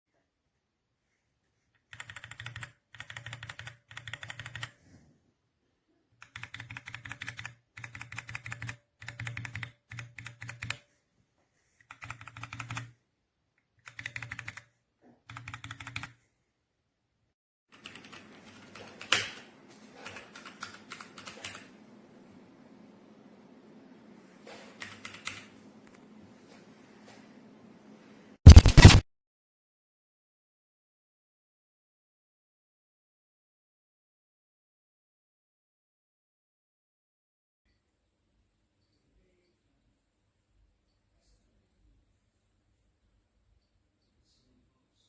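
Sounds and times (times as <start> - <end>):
mechanical keyboard typing: 1.9 - 4.7, 6.2 - 10.8, 11.9 - 12.9, 13.8 - 14.7, 15.3 - 16.1, 17.7 - 21.7, 24.8 - 25.5, 28.5 - 29.0.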